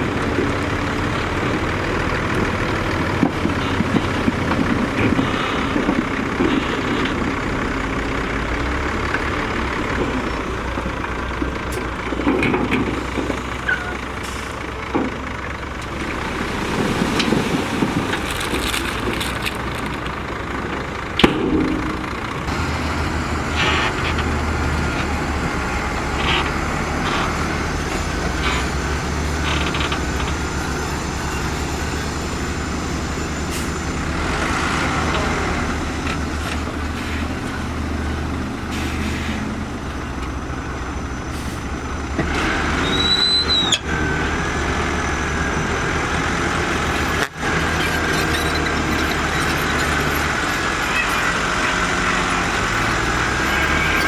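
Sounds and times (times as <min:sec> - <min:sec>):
diesel machinery rumbling: 0:00.0 - 0:54.0
high squeal: 0:24.8 - 0:35.1, 0:42.7 - 0:44.2, 0:46.7 - 0:54.0.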